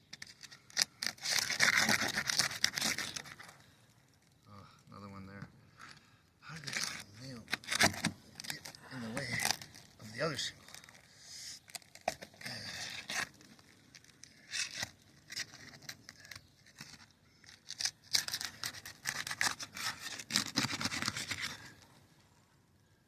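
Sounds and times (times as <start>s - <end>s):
shingles scraping and crackling: 0.1s - 3.8s, 6.6s - 11.1s, 11.7s - 21.8s.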